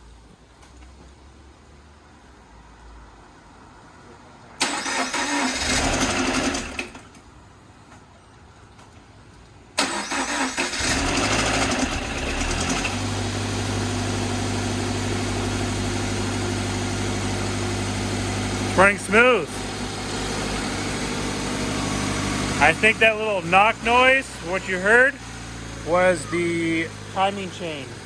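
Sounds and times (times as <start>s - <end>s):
starter motor cranking: 4.6s - 7.1s, 9.8s - 13.3s
car engine revving and idling: 5.6s - 6.9s, 10.6s - 28.0s
engine knock: 10.9s - 13.0s.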